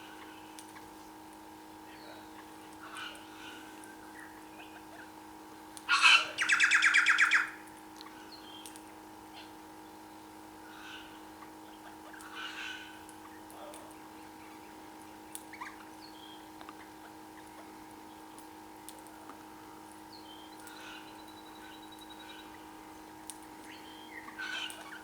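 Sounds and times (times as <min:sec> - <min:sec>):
steady low hum: 0:00.0 - 0:25.0
bird chirps and calls: 0:05.9 - 0:07.5.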